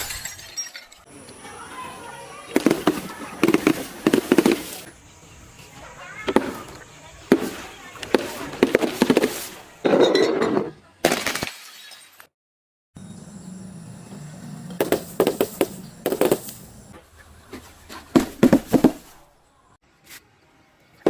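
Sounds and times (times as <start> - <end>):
glass breaking and crunching: 0.0 - 1.1, 11.0 - 12.3.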